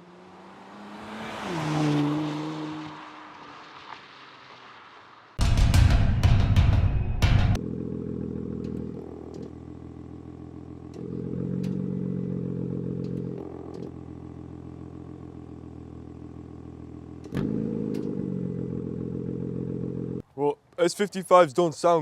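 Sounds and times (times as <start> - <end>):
car engine idling: 5.4 - 20.2.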